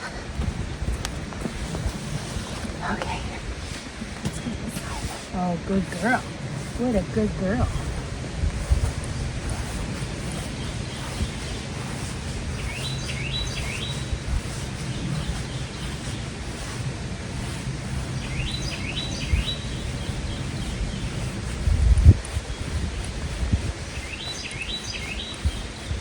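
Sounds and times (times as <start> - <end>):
low rumbling background: 0.0 - 24.1
small bird singing: 9.1 - 16.6, 17.9 - 26.0.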